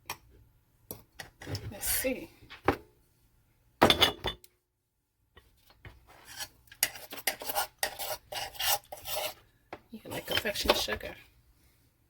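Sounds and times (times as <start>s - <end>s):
scraping and clinking on steel bowl: 6.2s - 9.4s.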